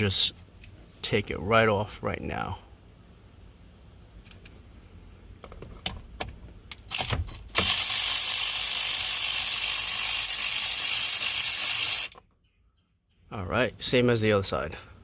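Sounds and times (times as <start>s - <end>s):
power tool running: 7.0s - 12.2s.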